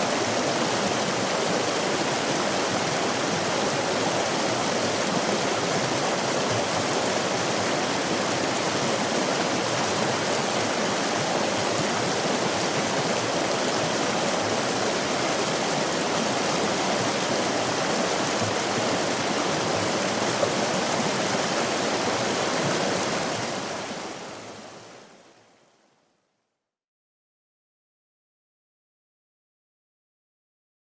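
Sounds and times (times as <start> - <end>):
stream rushing over rocks: 0.0 - 25.6.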